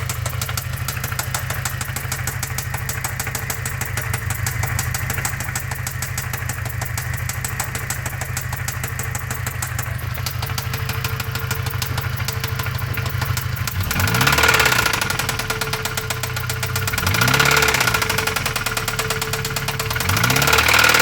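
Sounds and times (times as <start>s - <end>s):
engine idling with knock: 0.0s - 21.0s.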